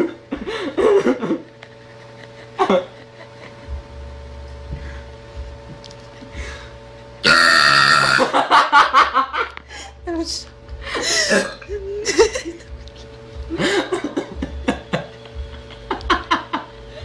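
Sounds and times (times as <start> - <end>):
girl burping loudly: 7.2 - 8.3, 11.3 - 11.7.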